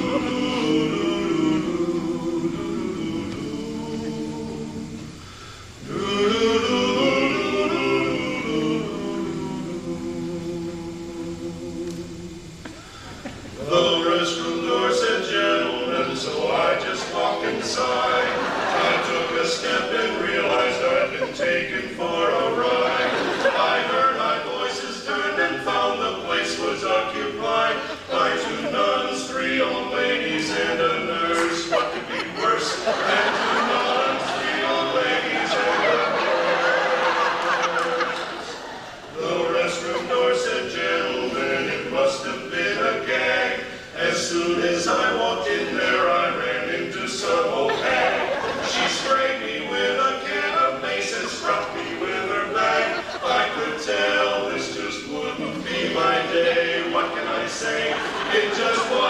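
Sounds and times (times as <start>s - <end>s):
a cappella quartet singing: 0.0s - 59.0s.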